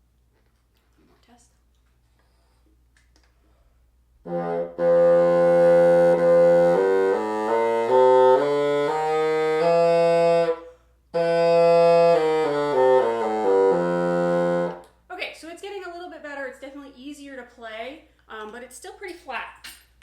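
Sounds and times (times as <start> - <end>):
bassoon playing held notes: 4.2 - 14.8.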